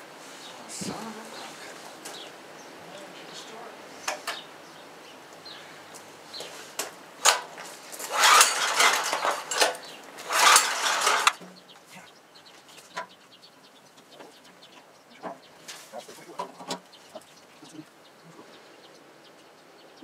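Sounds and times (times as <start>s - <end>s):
metal clattering and rattling: 6.8s - 11.6s.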